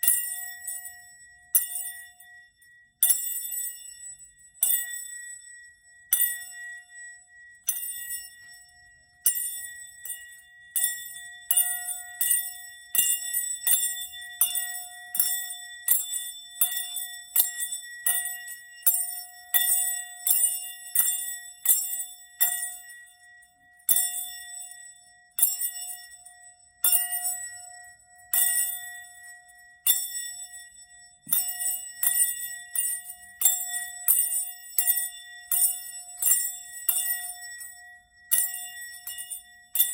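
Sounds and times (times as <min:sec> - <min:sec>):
small bells jingling: 0:26.8 - 0:39.9.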